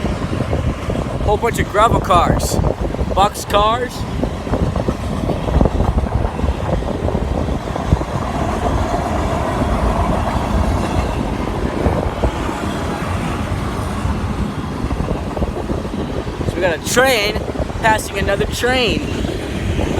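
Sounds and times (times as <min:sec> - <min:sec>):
freight train wheels rumbling: 0:00.0 - 0:19.9
wheels clacking over rail joints: 0:03.9 - 0:17.8.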